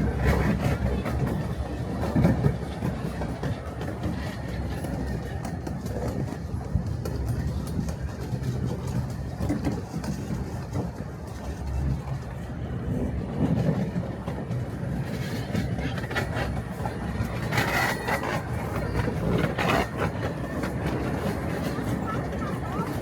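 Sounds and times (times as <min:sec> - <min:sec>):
miniature train rumbling on track: 0:00.0 - 0:23.0.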